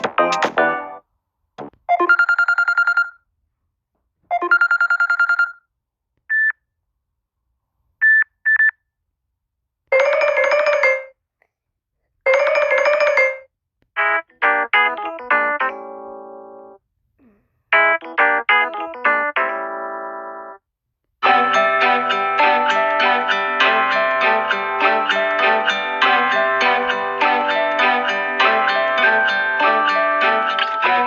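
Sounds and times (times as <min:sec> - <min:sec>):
electronic trilling ringtone: 0:01.9 - 0:03.2, 0:04.3 - 0:05.6
melodic ringtone: 0:01.9 - 0:03.2, 0:04.3 - 0:05.6, 0:09.9 - 0:11.2, 0:12.3 - 0:16.8, 0:17.7 - 0:20.6, 0:21.2 - 0:31.0
phone beeps: 0:01.9 - 0:03.2, 0:04.3 - 0:05.6, 0:06.3 - 0:06.6, 0:08.0 - 0:08.8.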